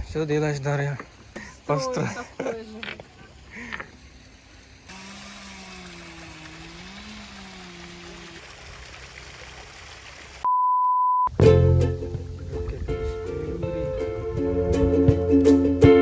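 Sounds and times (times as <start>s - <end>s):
rushing water: 5.8s - 10.5s
short pure beep: 10.5s - 11.3s
plucked ukulele music: 11.3s - 16.0s.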